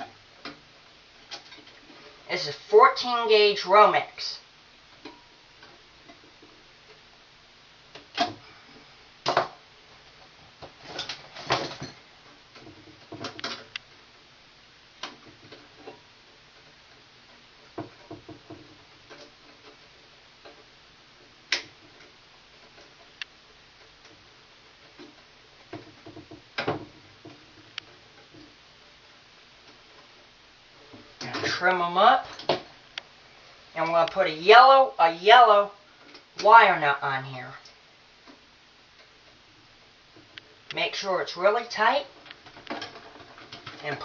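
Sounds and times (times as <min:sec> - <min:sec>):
rustle of wires: 0:04.4 - 0:34.1, 0:41.8 - 0:44.0.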